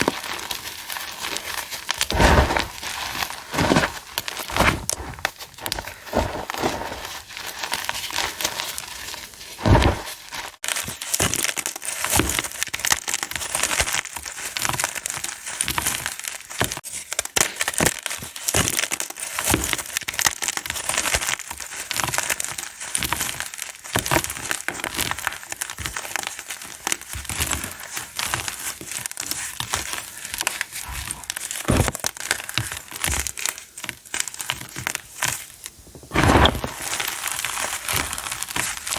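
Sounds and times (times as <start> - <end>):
chalk crackling and crunching: 0.0 - 38.9
heavy thuds: 2.1 - 2.9, 3.5 - 7.0, 9.6 - 10.1, 36.0 - 36.8.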